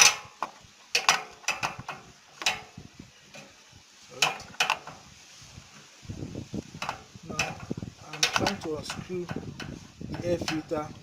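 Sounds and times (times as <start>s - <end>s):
metal tool rattling: 0.0s - 3.5s, 4.2s - 5.0s, 6.8s - 11.0s
hand tool clicking on screws: 6.8s - 10.8s.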